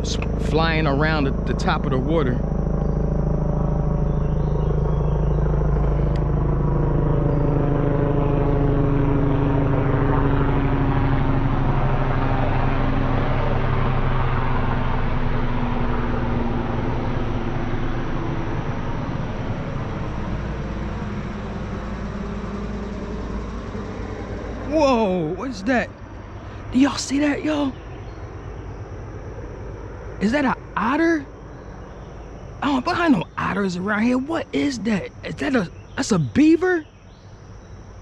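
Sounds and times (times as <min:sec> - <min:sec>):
vehicle engine droning: 0:00.0 - 0:38.0.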